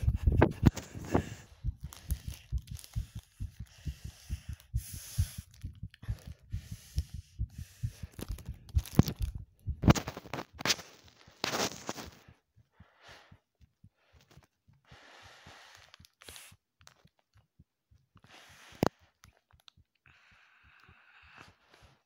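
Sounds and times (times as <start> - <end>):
rustling noise: 0.0 - 12.2
heartbeat thumps: 0.0 - 15.5.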